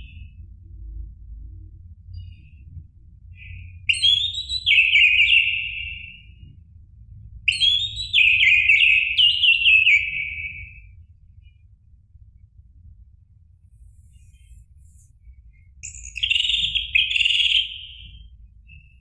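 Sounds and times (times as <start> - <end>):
thrush singing whistled notes: 15.8 - 19.0.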